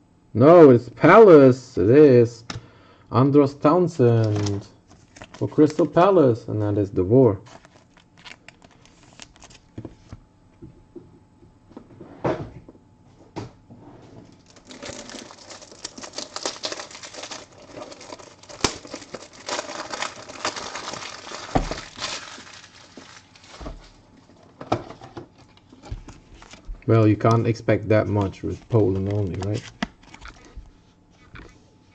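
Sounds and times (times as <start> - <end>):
cards rustling: 4.2 - 6.0, 7.4 - 10.1, 14.4 - 24.0, 25.4 - 31.6
plastic wrapper crinkling: 4.2 - 6.0, 7.4 - 9.8, 14.3 - 24.1, 28.2 - 31.5
cards tapping and clicking: 28.1 - 30.6.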